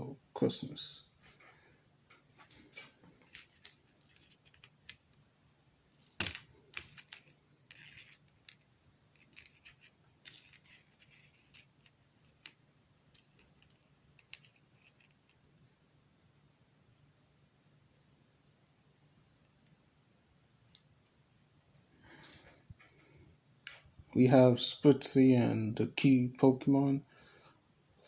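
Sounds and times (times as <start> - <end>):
plastic toy figures handled: 2.4 - 5.2, 5.9 - 15.4.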